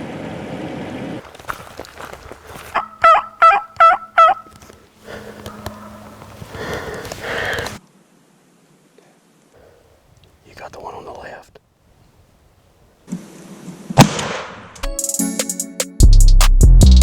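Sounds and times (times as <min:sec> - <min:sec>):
turkey yelping: 0:02.6 - 0:07.6.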